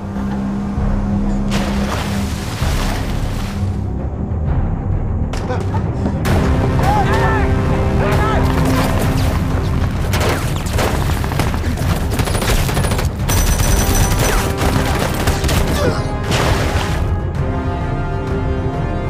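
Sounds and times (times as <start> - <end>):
background music: 0.0 - 19.0
rapid gunfire: 10.1 - 15.8.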